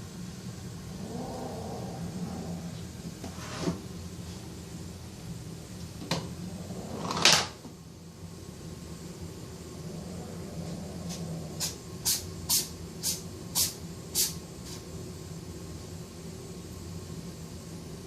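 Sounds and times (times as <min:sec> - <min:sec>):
pet growling low: 0:00.9 - 0:03.6, 0:06.3 - 0:07.4, 0:09.7 - 0:11.8.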